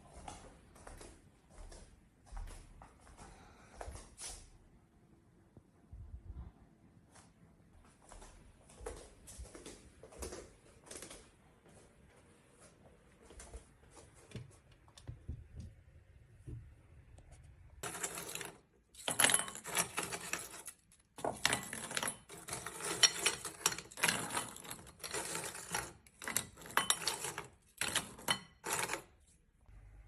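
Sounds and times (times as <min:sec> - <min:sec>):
small hard objects clinking: 0:17.8 - 0:29.1.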